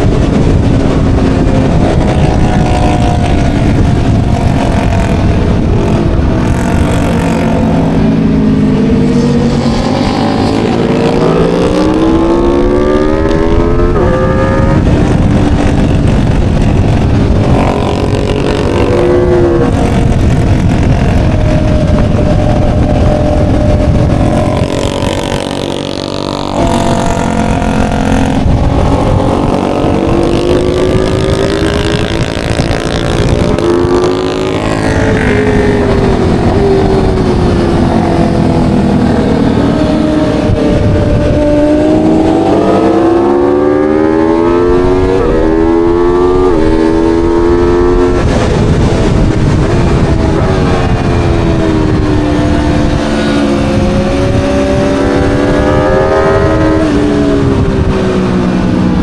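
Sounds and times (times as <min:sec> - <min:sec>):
motorcycle engine revving: 0:00.0 - 0:59.0
wind rushing: 0:00.0 - 0:59.0.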